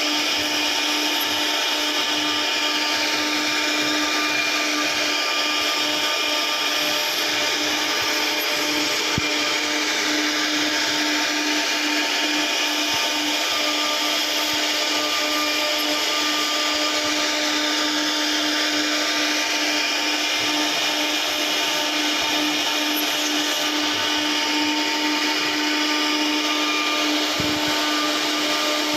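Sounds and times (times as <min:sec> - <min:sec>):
router spindle whine: 0:00.0 - 0:28.9.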